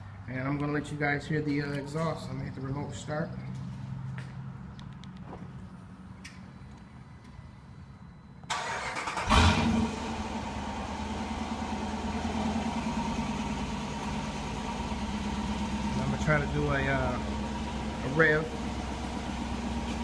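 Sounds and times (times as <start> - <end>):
car engine starting and idling: 8.4 - 20.0.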